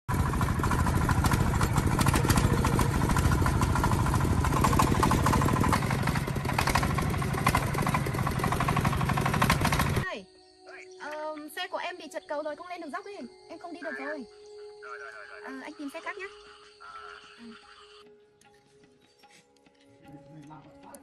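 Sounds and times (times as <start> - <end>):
diesel engine knocking: 0.1 - 10.0.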